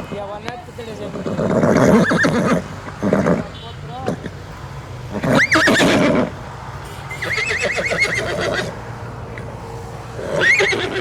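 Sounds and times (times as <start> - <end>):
horse neighing: 1.1 - 4.4, 5.1 - 6.4, 7.0 - 9.5, 10.2 - 11.0.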